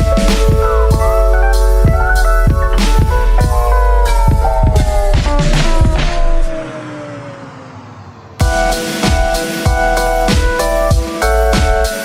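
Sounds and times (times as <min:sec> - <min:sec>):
electronic music with kick drum: 0:00.0 - 0:06.7, 0:08.4 - 0:12.0.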